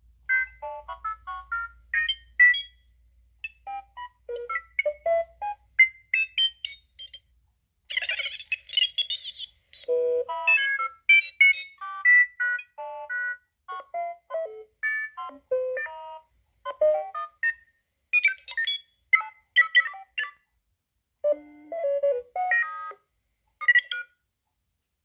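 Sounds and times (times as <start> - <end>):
droid beeps and whistles: 8.0 - 11.8.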